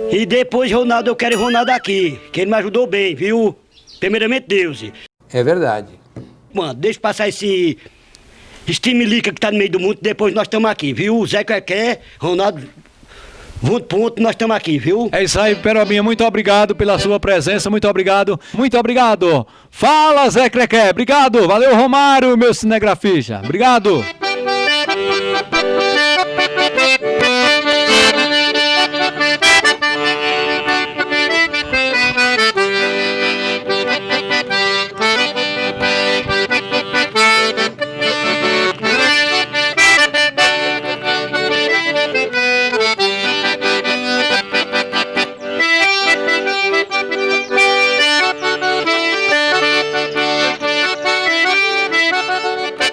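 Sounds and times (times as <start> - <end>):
accordion playing: 0.0 - 2.8, 15.2 - 17.3, 23.4 - 52.9.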